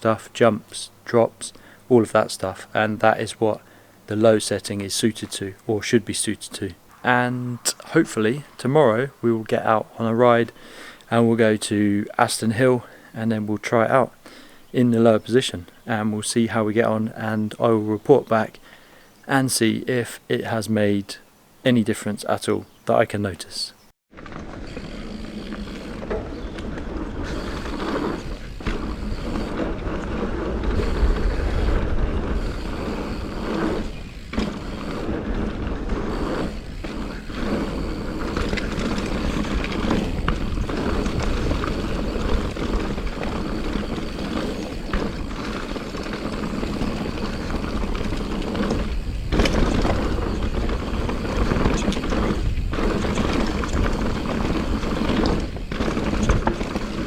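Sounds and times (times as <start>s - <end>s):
bike knocks and rattles: 24.1s - 57.0s
tyre and wind rushing: 24.1s - 57.0s.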